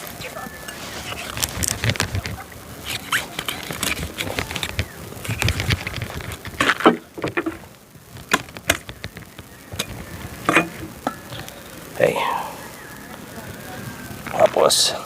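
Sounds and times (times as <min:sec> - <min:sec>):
taps clicks and knocks: 0:08.2 - 0:11.5.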